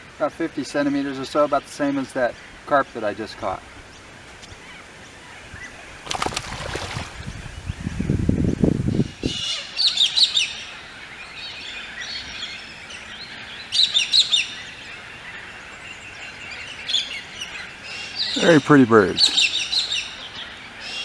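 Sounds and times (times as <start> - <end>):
rustling: 6.0 - 7.4.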